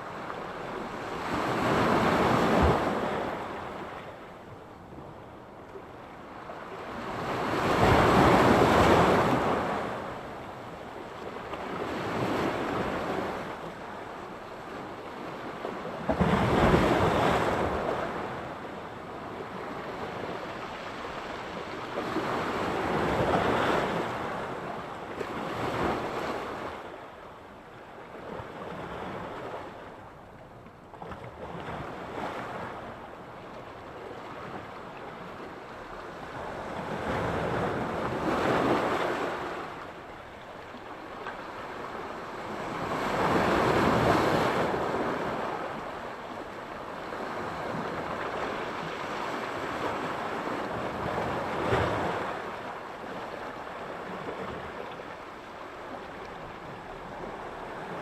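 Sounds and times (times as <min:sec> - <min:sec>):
waves breaking on shore: 0:06.5 - 0:10.4, 0:14.7 - 0:27.0, 0:34.0 - 0:58.0.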